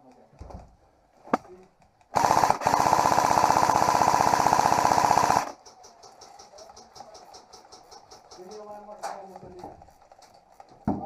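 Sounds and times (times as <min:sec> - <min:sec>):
airsoft rifle rapid burst: 0:02.1 - 0:08.8.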